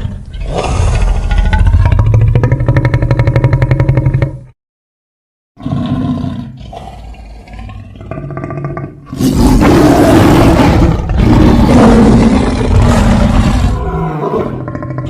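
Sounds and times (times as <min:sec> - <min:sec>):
low creature growl: 0:00.0 - 0:04.5, 0:05.6 - 0:15.0
loud rough roar: 0:09.1 - 0:14.6.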